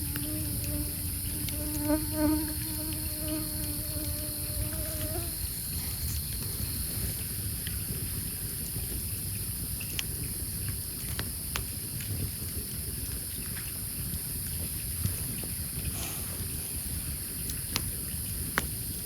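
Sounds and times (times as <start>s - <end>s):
crickets chirping: 0.0s - 19.0s
wood fire crackling and popping: 9.8s - 13.8s, 14.6s - 19.0s.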